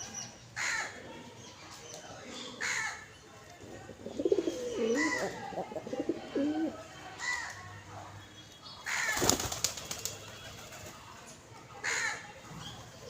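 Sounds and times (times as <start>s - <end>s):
small birds calling: 4.0s - 5.4s
bird wings flapping and splashing: 9.0s - 10.9s.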